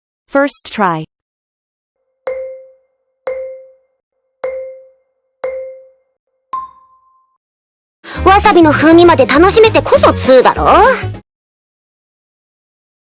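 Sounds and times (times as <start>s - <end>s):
marimba-like countdown tones: 2.3s - 7.0s.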